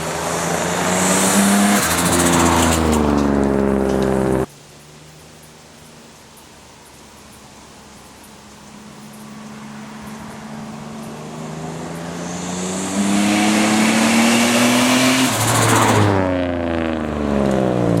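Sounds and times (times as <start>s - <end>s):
car engine accelerating: 0.0s - 4.5s, 8.9s - 18.0s.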